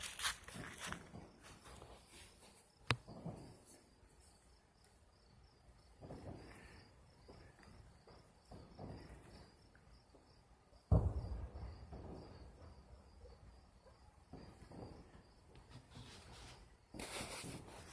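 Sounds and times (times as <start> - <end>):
fireworks booming: 3.0 - 3.6, 5.9 - 10.1, 10.8 - 13.6, 14.2 - 15.5.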